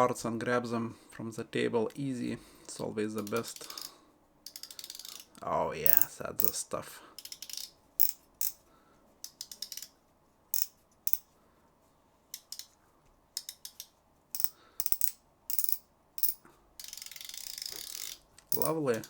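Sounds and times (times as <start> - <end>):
fishing reel drag clicking: 3.3 - 3.9, 4.5 - 5.3, 7.2 - 8.6, 14.4 - 19.0.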